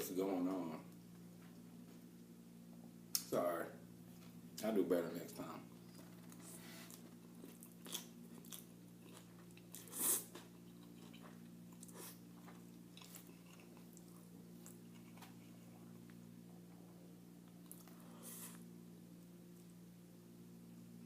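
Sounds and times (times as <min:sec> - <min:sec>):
steady low hum: 0:00.0 - 0:21.0
food crunching: 0:05.8 - 0:16.2
person biting and chewing food: 0:05.9 - 0:16.1.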